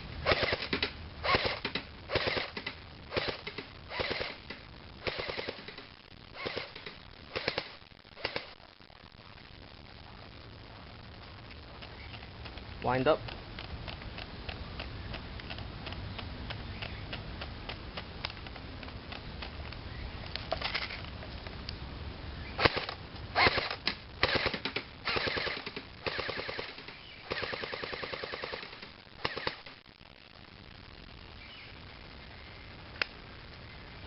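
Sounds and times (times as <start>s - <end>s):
airsoft gun firing bursts: 0.2s - 8.6s, 22.6s - 29.7s.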